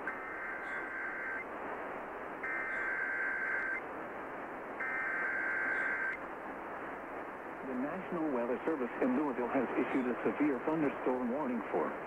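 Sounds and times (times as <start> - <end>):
buzzy two-tone data bursts: 0.0 - 1.5, 2.4 - 3.8, 4.8 - 6.2
radio hiss: 0.0 - 12.0.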